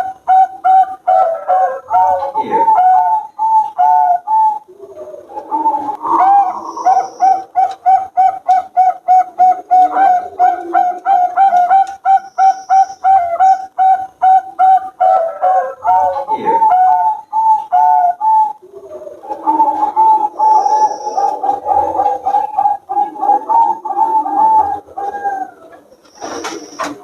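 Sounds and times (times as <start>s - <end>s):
doves cooing: 0.0s - 27.0s.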